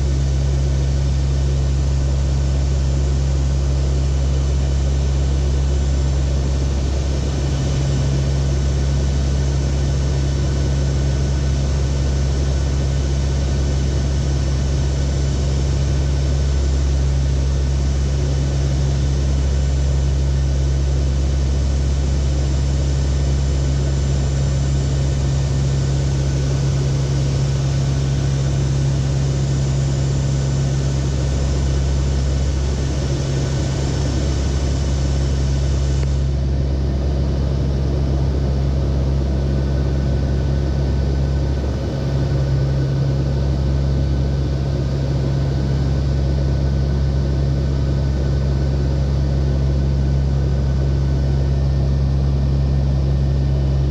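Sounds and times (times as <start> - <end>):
low hum: 0.0 - 53.9
turboprop engines droning: 0.0 - 53.9
rushing air noise: 30.4 - 36.4.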